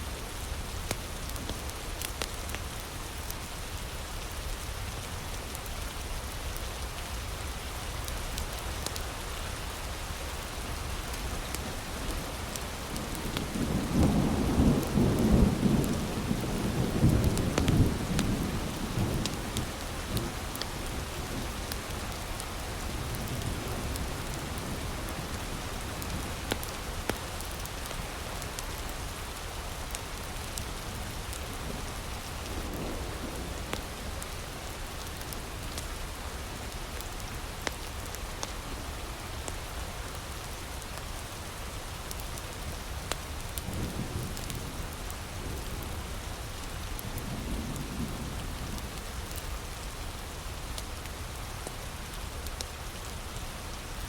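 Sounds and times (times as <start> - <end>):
heavy rain: 0.0 - 54.0
wood fire crackling: 15.9 - 32.5, 33.5 - 38.6.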